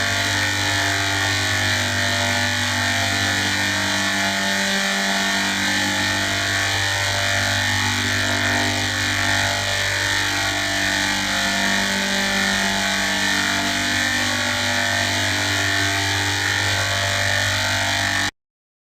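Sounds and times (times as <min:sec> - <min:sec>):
buzzing electronic drone: 0:00.0 - 0:18.3.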